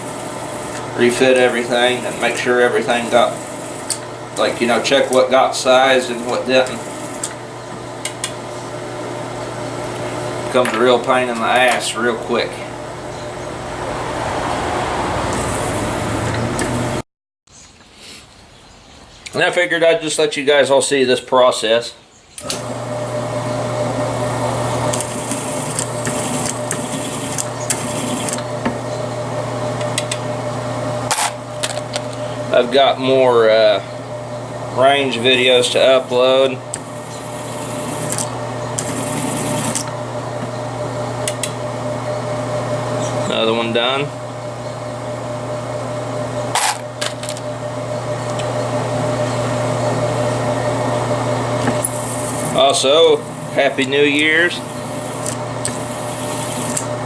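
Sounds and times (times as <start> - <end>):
small electric motor running: 0.0 - 17.0, 22.4 - 57.0
steady low hum: 0.0 - 17.0
brass cases clinking: 31.1 - 32.2, 46.5 - 47.5.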